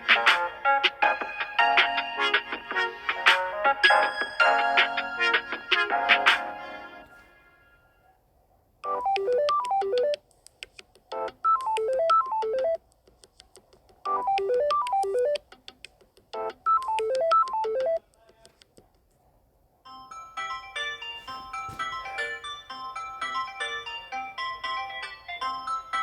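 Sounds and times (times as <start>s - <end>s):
different ringtone: 3.1s - 6.3s, 8.8s - 10.2s, 11.2s - 12.8s, 14.1s - 15.4s, 16.4s - 18.0s, 19.9s - 26.0s
phone ringtone: 3.8s - 6.3s, 8.8s - 10.2s, 11.2s - 12.8s, 14.1s - 15.4s, 16.4s - 18.0s, 19.9s - 26.0s.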